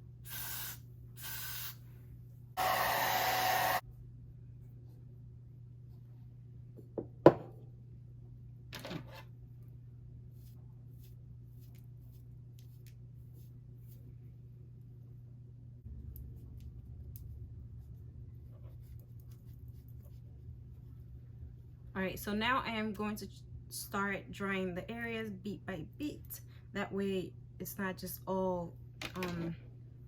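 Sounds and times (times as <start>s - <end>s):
hair dryer humming: 2.6s - 3.8s.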